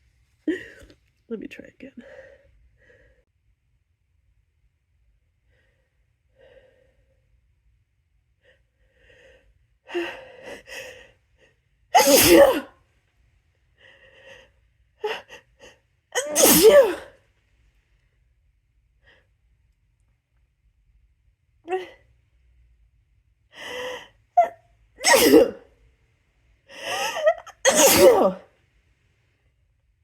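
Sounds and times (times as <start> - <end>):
person sneezing: 12.0 - 12.7, 16.2 - 17.1, 25.0 - 25.6, 27.1 - 28.4.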